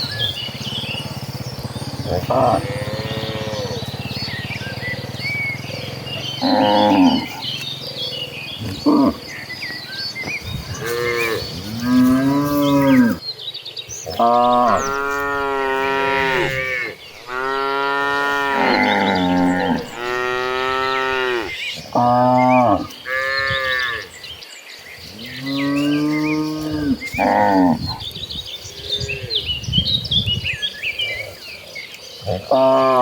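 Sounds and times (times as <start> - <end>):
small birds chirping: 0.0 - 33.0
cattle mooing: 2.0 - 4.0, 6.3 - 7.4, 10.7 - 13.2, 14.1 - 24.1, 25.3 - 28.0, 32.3 - 33.0.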